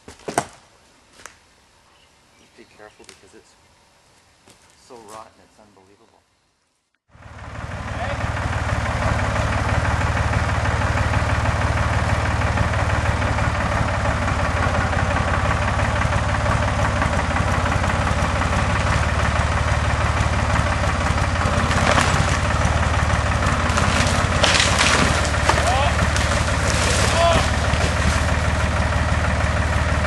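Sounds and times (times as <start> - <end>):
tractor engine running: 7.1 - 30.0
wood cracking: 15.8 - 29.1.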